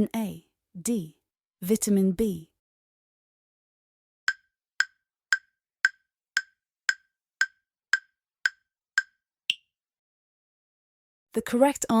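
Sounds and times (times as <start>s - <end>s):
clock-like ticking: 4.3s - 9.2s.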